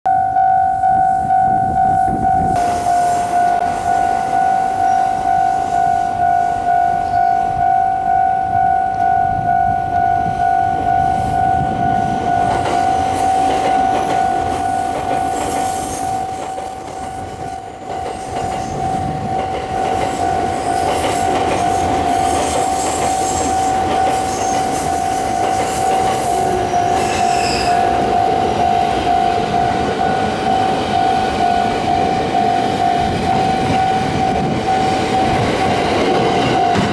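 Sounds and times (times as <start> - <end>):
level crossing warning bell: 0.1 - 36.9
train wheels rumbling on rails: 1.5 - 8.1, 8.9 - 36.9.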